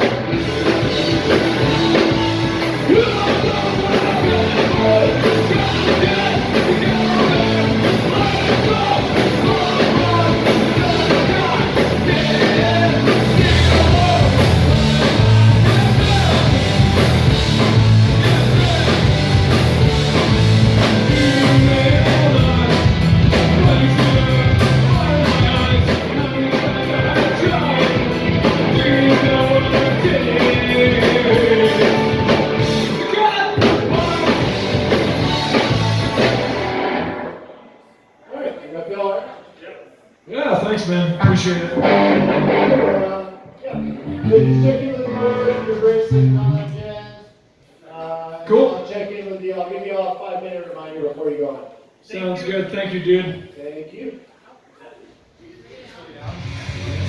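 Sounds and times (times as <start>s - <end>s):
bass guitar: 0.0s - 37.3s, 41.8s - 47.1s, 56.2s - 57.0s
electric guitar: 0.0s - 37.6s, 41.8s - 47.2s, 56.2s - 57.0s
drums: 0.0s - 37.7s, 41.2s - 48.3s, 55.6s - 57.0s
person singing: 1.6s - 17.0s, 21.1s - 33.1s, 43.7s - 47.0s.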